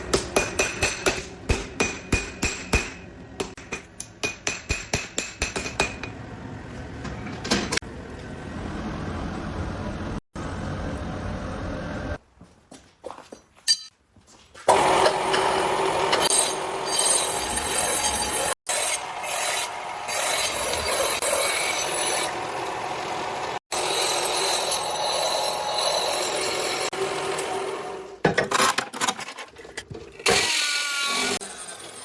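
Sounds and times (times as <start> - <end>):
tool grinding steel: 14.7 - 22.4, 23.7 - 27.6.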